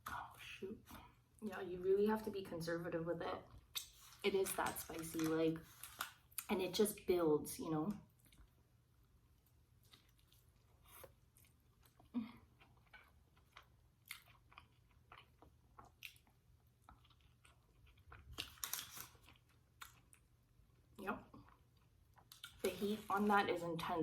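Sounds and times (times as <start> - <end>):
chewing with soft crunches: 8.0 - 23.9.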